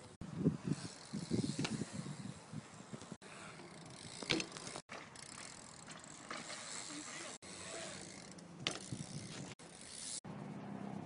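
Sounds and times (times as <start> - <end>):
bike hub ticking: 3.0 - 10.2.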